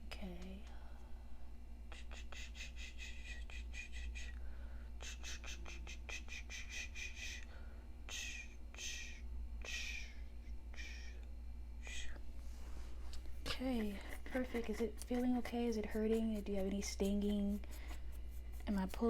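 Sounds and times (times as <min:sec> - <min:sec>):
razor scraping hair: 0:13.2 - 0:19.0.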